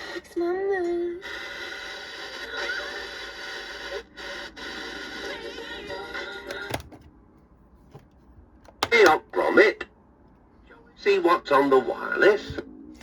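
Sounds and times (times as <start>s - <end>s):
music from small radio speaker: 0.0s - 6.9s
radio switch click: 6.5s - 7.1s, 8.7s - 9.2s.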